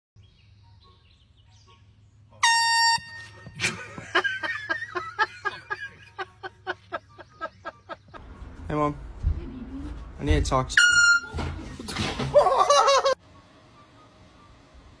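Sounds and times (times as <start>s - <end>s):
air horn blast: 2.4s - 3.6s, 10.8s - 11.4s
person laughing in rapid bursts: 3.6s - 8.2s, 12.3s - 13.2s.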